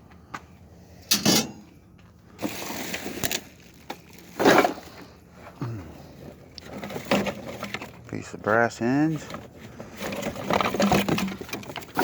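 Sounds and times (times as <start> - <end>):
scrap metal clanking: 1.0 - 1.7, 9.0 - 12.0.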